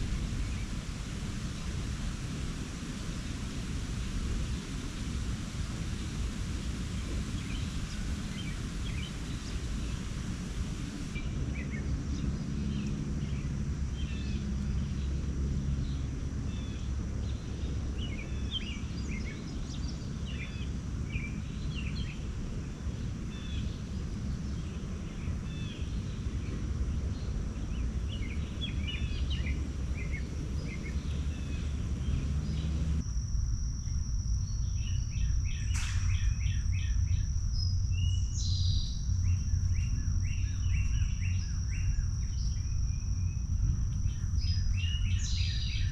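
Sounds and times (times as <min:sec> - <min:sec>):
high insect-like tone: 0:00.0 - 0:45.9
low background rumble: 0:00.0 - 0:45.9
songbirds chirping: 0:05.9 - 0:33.0.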